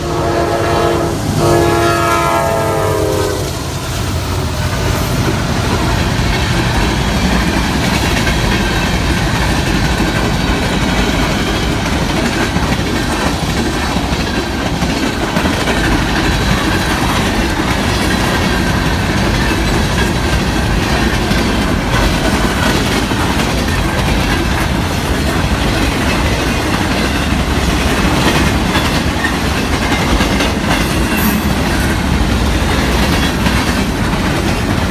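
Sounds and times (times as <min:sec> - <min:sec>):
train horn blasts: 0:00.0 - 0:05.5
freight cars rumbling and clattering: 0:03.6 - 0:34.9.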